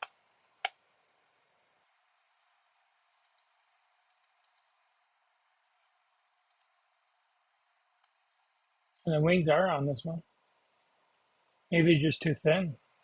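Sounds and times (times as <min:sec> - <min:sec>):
computer mouse clicks: 0:00.0 - 0:00.8, 0:03.2 - 0:04.8, 0:06.4 - 0:06.8.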